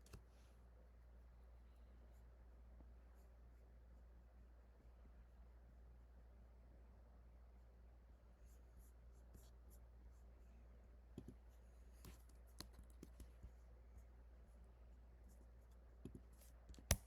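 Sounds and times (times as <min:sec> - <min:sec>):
low steady hum: 0:00.0 - 0:17.0
faint keyboard clicks: 0:12.0 - 0:13.5.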